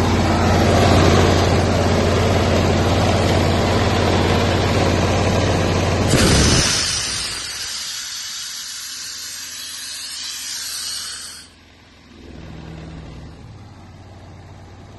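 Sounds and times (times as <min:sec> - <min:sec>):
engine idling: 0:00.0 - 0:14.9
compressed air hissing: 0:06.1 - 0:11.6.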